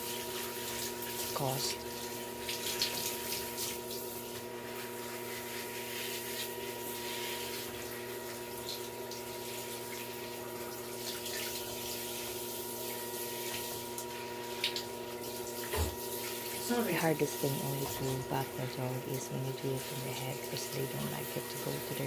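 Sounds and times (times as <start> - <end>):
shower water running: 0.0 - 22.0
steady hum: 12.8 - 22.0.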